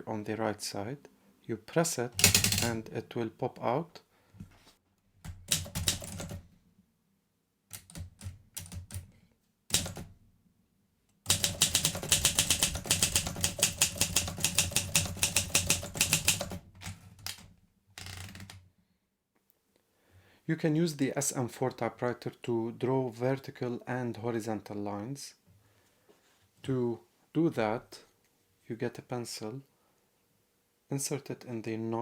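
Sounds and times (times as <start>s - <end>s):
rapid typewriter typing: 2.2s - 2.8s, 5.2s - 6.4s, 7.7s - 9.1s, 9.7s - 10.1s, 11.3s - 18.5s
typewriter mechanism clicks: 2.2s - 2.8s, 9.7s - 10.1s, 11.3s - 18.5s.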